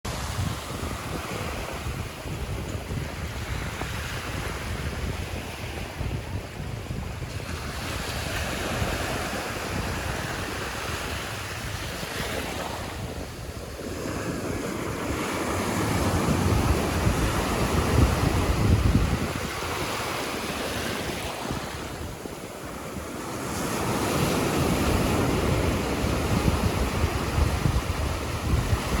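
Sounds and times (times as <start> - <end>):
surf washing onto beach: 0.1 - 29.0
wind buffeting microphone: 0.1 - 29.0.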